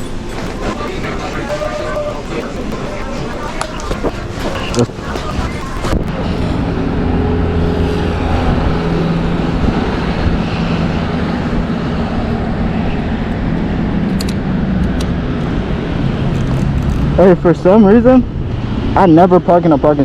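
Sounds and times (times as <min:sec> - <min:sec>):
wind rush on microphone: 0:00.0 - 0:17.2
moped motor hum: 0:00.0 - 0:17.4.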